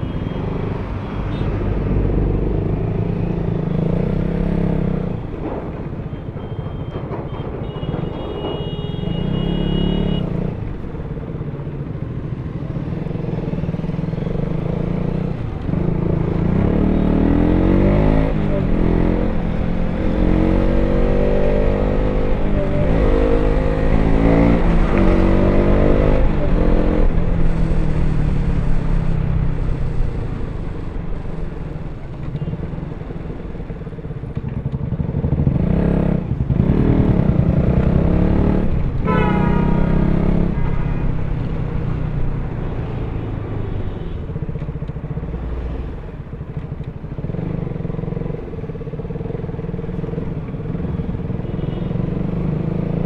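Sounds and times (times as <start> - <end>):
motorcycle engine revving: 14.5 - 31.6, 32.4 - 53.0.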